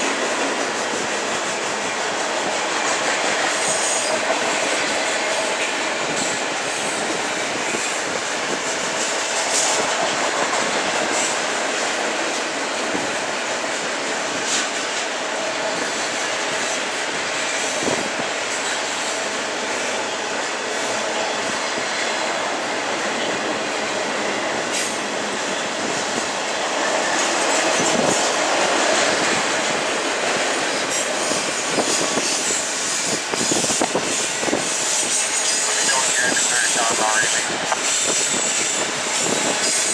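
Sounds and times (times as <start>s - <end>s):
freight train rolling past: 0.0s - 39.9s.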